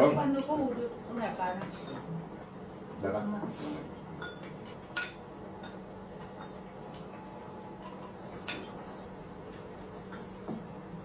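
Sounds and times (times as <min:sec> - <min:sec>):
chopsticks clinking on bowls: 0:04.2 - 0:07.2.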